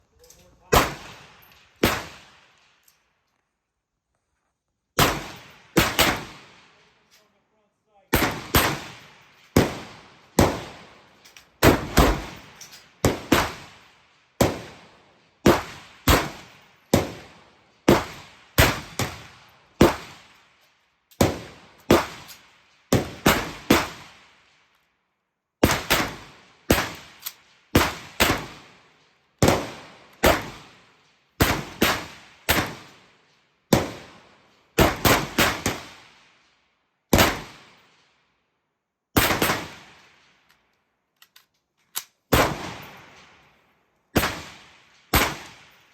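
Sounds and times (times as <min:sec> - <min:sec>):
rifle shots echoing: 0:00.7 - 0:02.6, 0:05.0 - 0:06.9, 0:08.1 - 0:20.3, 0:21.2 - 0:24.3, 0:25.6 - 0:33.0, 0:34.8 - 0:36.2, 0:37.1 - 0:37.9, 0:39.2 - 0:40.3, 0:42.3 - 0:43.4, 0:44.2 - 0:45.8.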